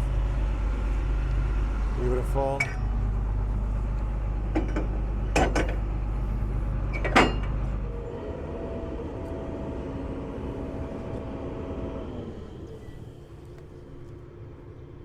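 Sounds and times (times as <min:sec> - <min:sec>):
diesel engine drone: 0:00.0 - 0:15.0
faint steady machine whine: 0:00.0 - 0:15.0
sharp metallic clunks: 0:02.6 - 0:02.9, 0:06.9 - 0:07.6.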